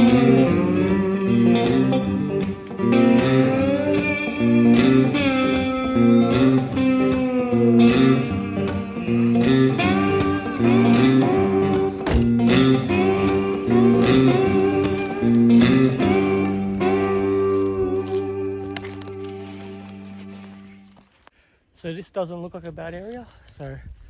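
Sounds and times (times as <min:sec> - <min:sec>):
guitar background music: 0:00.0 - 0:21.0.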